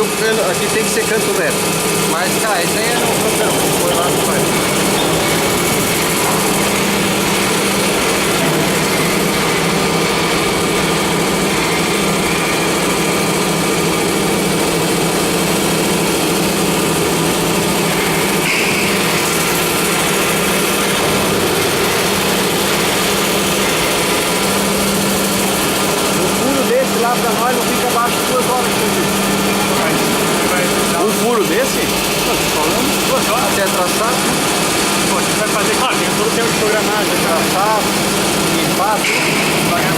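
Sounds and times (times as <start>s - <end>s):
drilling machine humming: 0.0s - 39.9s.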